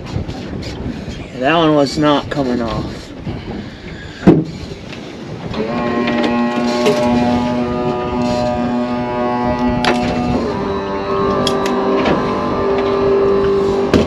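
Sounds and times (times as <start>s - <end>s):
outboard motor running: 4.3s - 14.0s.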